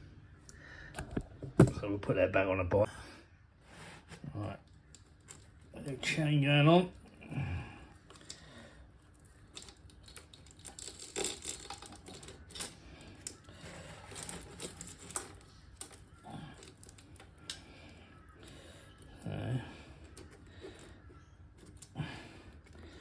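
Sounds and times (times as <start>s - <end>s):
metallic chain clicks and rattles: 9.2s - 13.4s, 14.0s - 17.6s.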